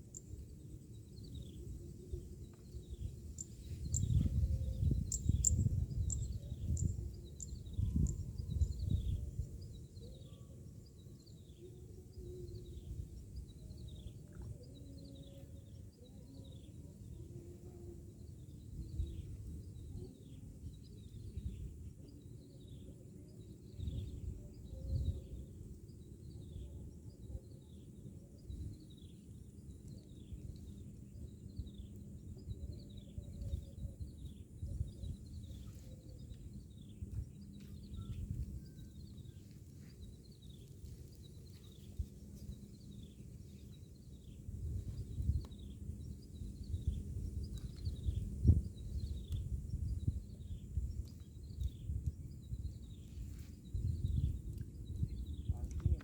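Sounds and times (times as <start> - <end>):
bird chirping: 0.0 - 16.8
low background rumble: 28.4 - 56.0.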